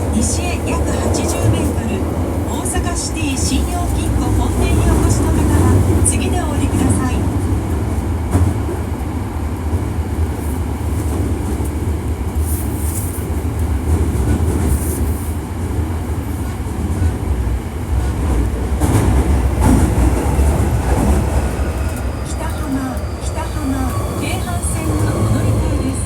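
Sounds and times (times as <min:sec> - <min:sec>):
rail clatter: 0:00.0 - 0:08.9, 0:17.9 - 0:26.0
train wheels rumbling in tunnel: 0:00.0 - 0:26.0.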